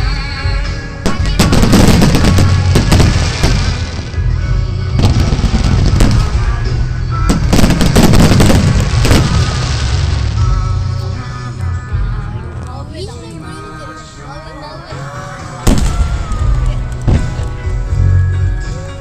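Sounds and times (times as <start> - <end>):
loud music: 0.0 - 19.0
fireworks bangs and crackles: 1.0 - 11.0, 15.6 - 17.9.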